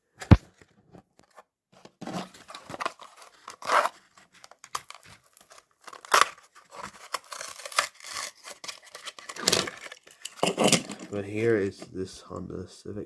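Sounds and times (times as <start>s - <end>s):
packaging being torn open: 2.3s - 10.1s.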